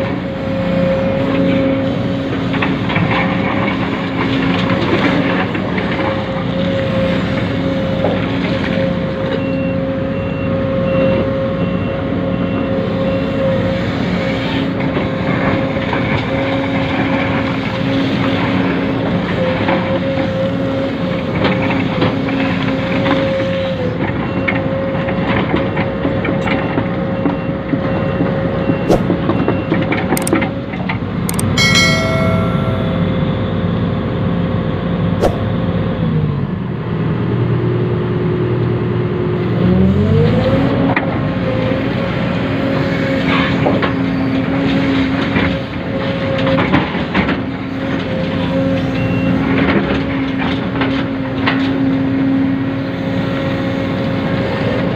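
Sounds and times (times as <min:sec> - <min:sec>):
sharp clicks: 0:30.2 - 0:30.4, 0:31.3 - 0:31.6.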